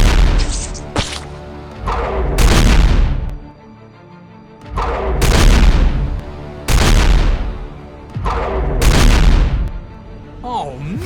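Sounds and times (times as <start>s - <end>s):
explosion booms: 0.0s - 0.7s, 2.2s - 3.4s, 4.8s - 9.8s
sharp crack: 0.0s - 3.5s, 4.7s - 9.9s
background music: 0.0s - 11.0s.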